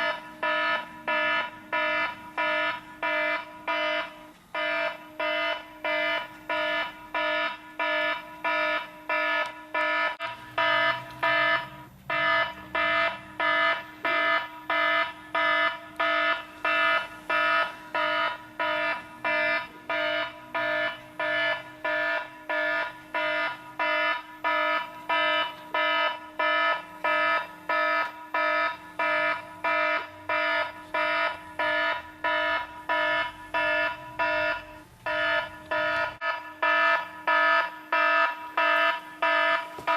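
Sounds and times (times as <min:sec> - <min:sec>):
crossing warning bell ringing: 0:00.0 - 0:39.9.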